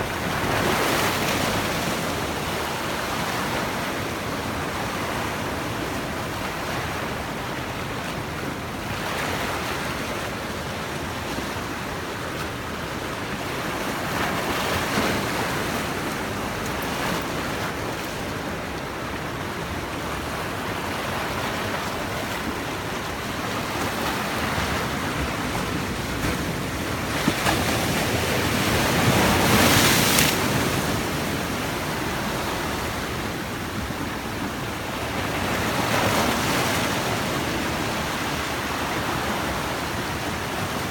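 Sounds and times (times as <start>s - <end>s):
sea waves washing ashore: 0.0s - 40.9s.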